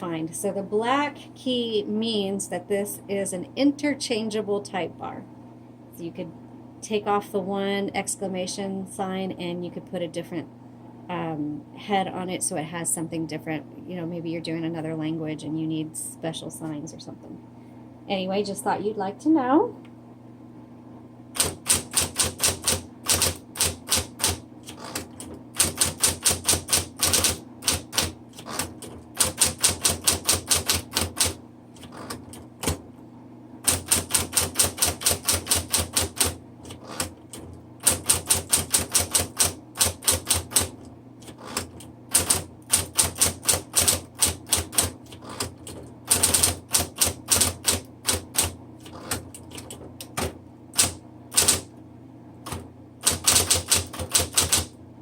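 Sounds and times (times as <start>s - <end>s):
typewriter motor hum: 21.3s - 32.8s, 33.6s - 51.8s, 52.4s - 54.8s
typewriter keystrokes: 21.4s - 32.8s, 33.7s - 51.7s, 52.4s - 54.7s.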